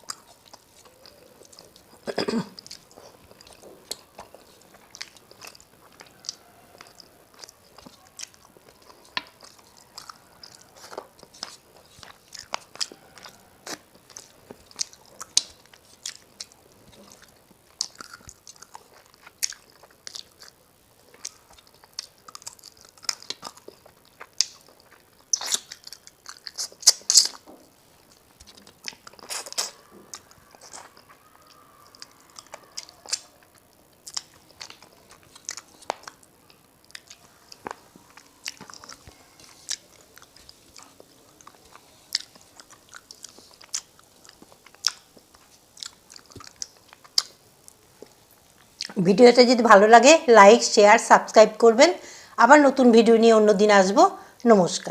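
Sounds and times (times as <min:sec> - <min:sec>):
person chewing with mouth smacks: 0:00.0 - 0:49.0.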